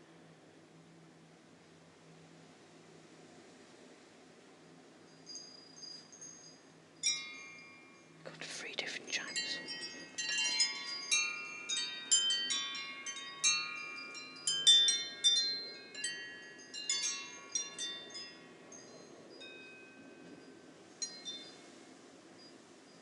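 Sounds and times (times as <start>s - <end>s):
wind chimes ringing: 5.2s - 8.2s, 8.8s - 21.8s.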